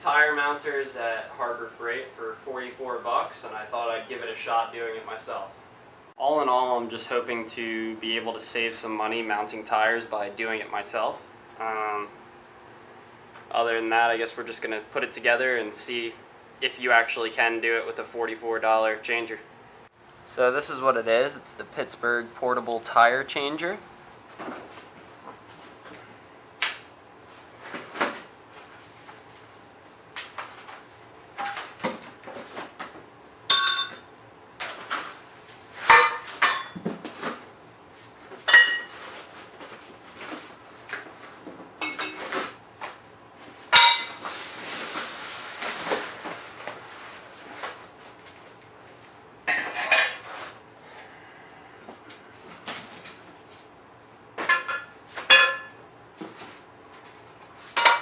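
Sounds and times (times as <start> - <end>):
steel parts clanking and ringing: 33.5 - 34.3, 35.9 - 36.8, 43.8 - 44.2.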